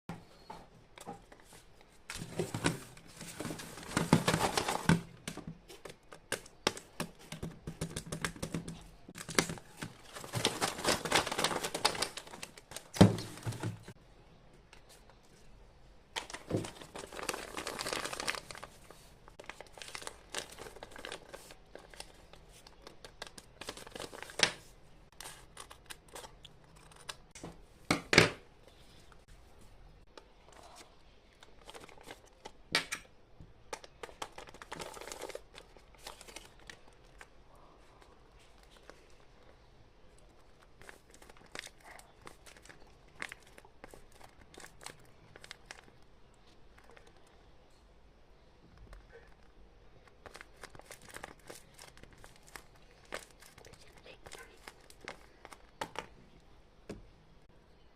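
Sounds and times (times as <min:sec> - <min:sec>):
plastic wrapping rustling: 0:01.4 - 0:07.5, 0:08.6 - 0:14.0, 0:16.2 - 0:27.3, 0:33.8 - 0:39.6, 0:40.2 - 0:47.3, 0:48.9 - 0:56.2.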